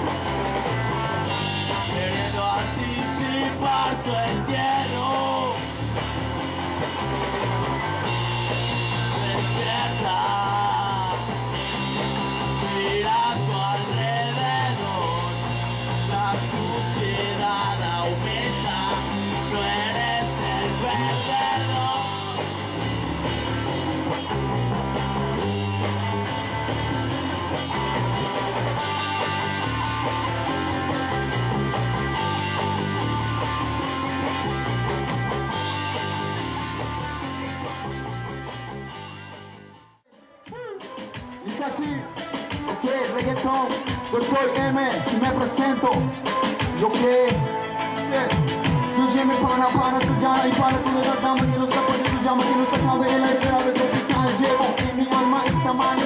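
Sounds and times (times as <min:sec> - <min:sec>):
bass line: 0:00.0 - 0:56.0
guitar: 0:00.0 - 0:56.0
person singing: 0:01.6 - 0:05.7, 0:08.8 - 0:11.4, 0:12.5 - 0:22.7, 0:40.1 - 0:56.0.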